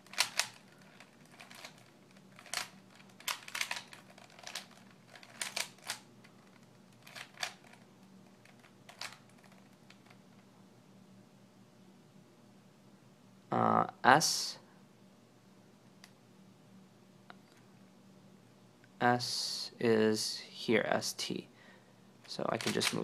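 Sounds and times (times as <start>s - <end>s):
plastic cube clicks: 0.1s - 6.0s, 7.0s - 7.8s, 22.6s - 23.0s.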